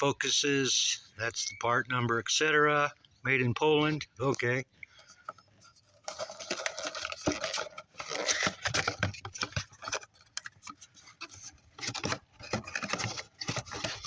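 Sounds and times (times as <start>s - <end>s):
packaging rustling and scraping: 5.0s - 14.0s.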